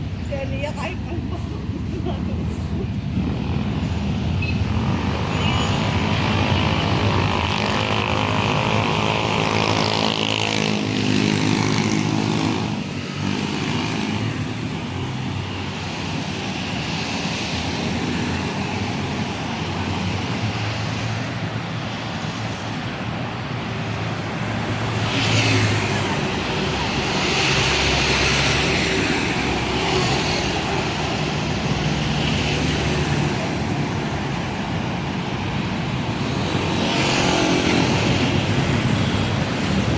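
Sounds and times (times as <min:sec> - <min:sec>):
street traffic: 0:00.0 - 0:39.9.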